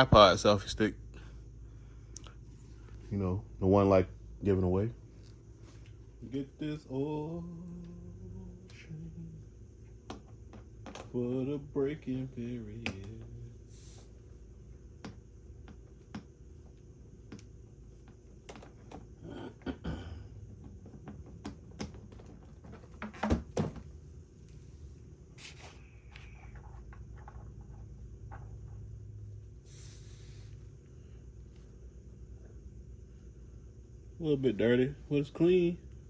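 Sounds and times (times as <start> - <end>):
steady low hum: 0.0 - 36.0
handling clicks and knocks: 20.4 - 23.9.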